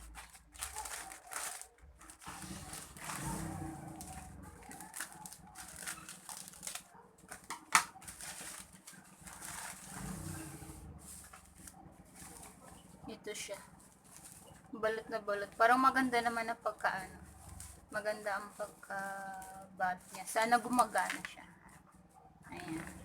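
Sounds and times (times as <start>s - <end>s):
plastic packaging crinkling: 0.0s - 21.4s.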